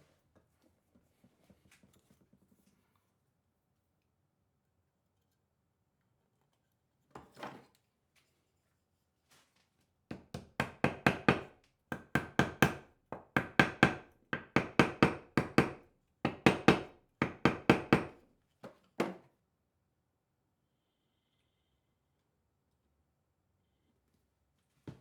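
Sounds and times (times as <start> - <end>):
hammer tapping on wood: 10.1 - 18.2.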